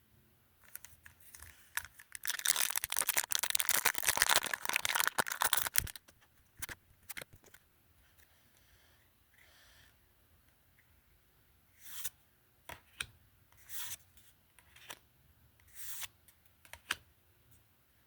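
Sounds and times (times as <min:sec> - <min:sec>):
foil wrapper tearing and crinkling: 0:01.3 - 0:06.1.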